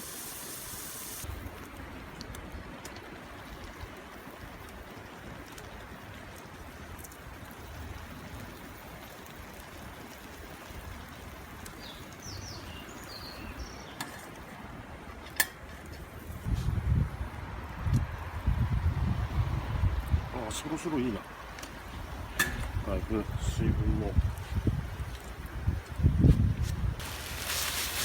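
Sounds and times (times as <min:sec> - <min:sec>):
small bird chirping: 0:11.7 - 0:14.0.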